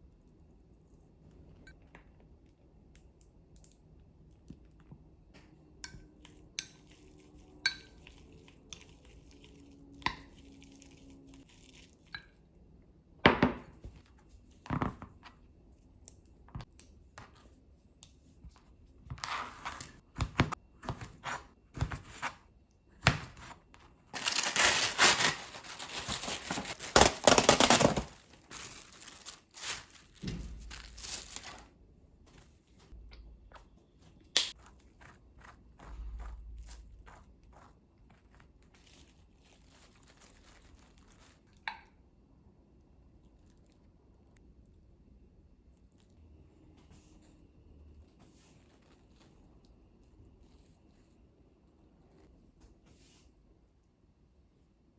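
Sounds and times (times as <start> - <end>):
rustling tearing noise: 24.1 - 31.7, 38.2 - 41.6.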